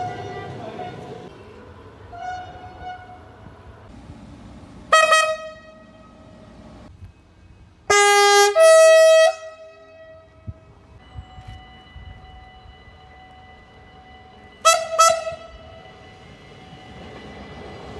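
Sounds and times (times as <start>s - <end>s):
train horn blasts: 2.1s - 3.5s, 4.9s - 6.5s, 7.9s - 13.7s, 14.5s - 15.9s.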